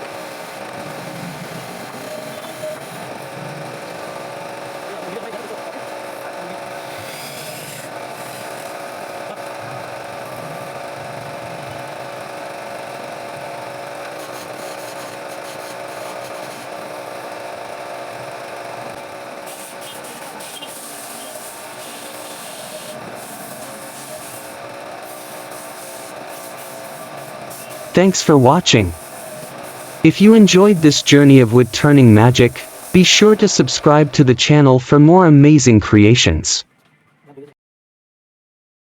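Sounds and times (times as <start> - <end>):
wood lathe humming: 0.0 - 11.2, 11.8 - 27.9, 28.9 - 30.1, 32.5 - 33.0.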